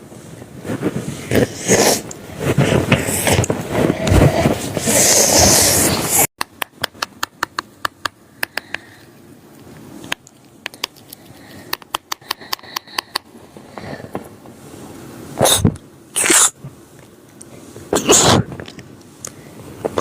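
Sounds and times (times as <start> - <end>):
girl sneezing: 18.0 - 18.5.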